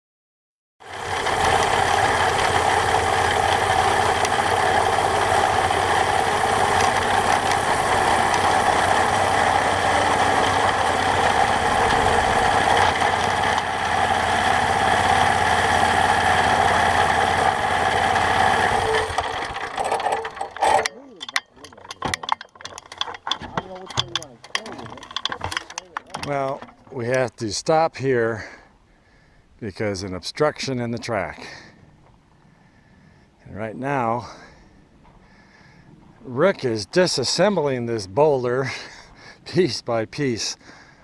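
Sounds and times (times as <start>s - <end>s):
rail vehicle engine running: 0.8s - 27.4s.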